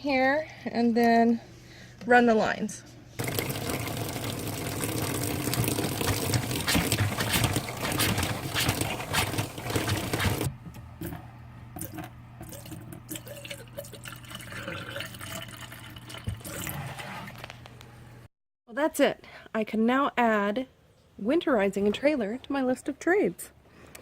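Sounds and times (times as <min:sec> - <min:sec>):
liquid pouring into funnel: 0:03.2 - 0:11.2, 0:11.8 - 0:17.2.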